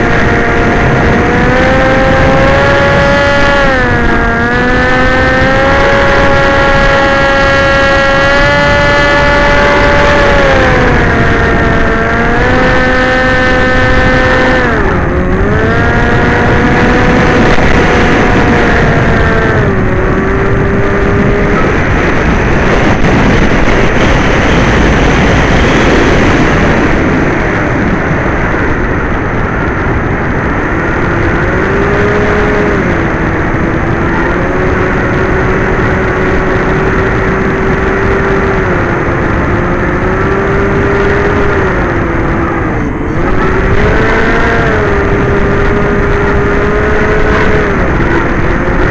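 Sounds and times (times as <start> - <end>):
drone motors whining: 0.0 - 48.9
wind rush: 0.0 - 48.9.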